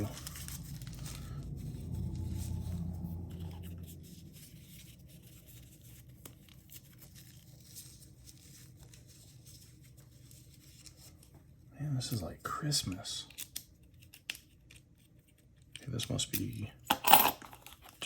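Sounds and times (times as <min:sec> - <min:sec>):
packaging rustling: 0:00.0 - 0:11.4
low steady hum: 0:00.0 - 0:18.0.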